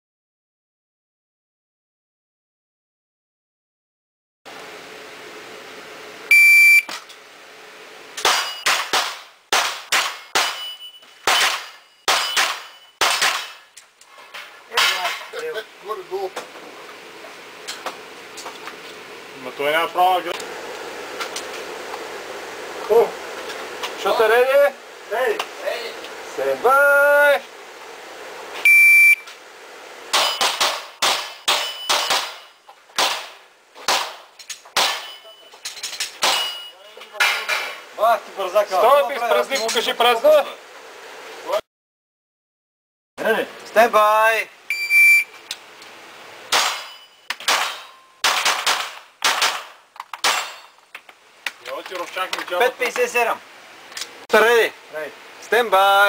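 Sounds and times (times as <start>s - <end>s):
shot timer beep: 6.3s - 6.9s, 10.5s - 13.0s, 28.7s - 29.2s, 44.7s - 45.4s
steel targets ringing: 8.2s - 8.8s, 10.0s - 13.6s, 30.1s - 30.6s, 31.2s - 32.7s, 34.8s - 36.8s, 46.5s - 48.2s
gunshots: 8.2s - 10.6s, 11.2s - 13.6s, 30.1s - 34.2s, 34.8s - 35.1s, 46.5s - 50.6s.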